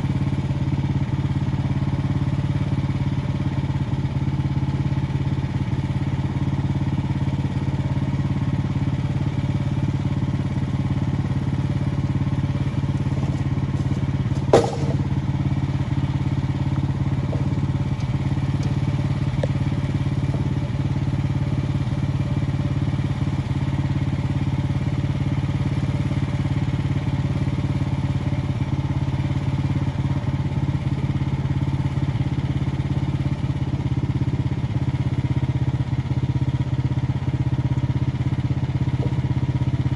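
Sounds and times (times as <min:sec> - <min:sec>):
small gasoline engine running: 0:00.0 - 0:39.9
sharp knock: 0:13.9 - 0:15.2.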